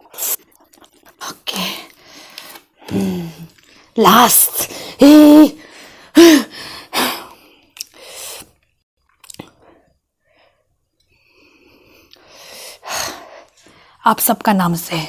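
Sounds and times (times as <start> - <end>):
chewing with mouth clicks: 0.0 - 4.0, 7.6 - 8.0, 8.6 - 9.6.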